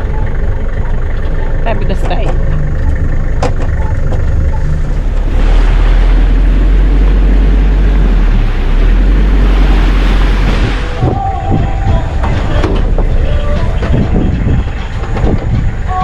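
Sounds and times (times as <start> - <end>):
vehicle rumble: 0.0 - 16.0
wind buffeting microphone: 9.0 - 16.0.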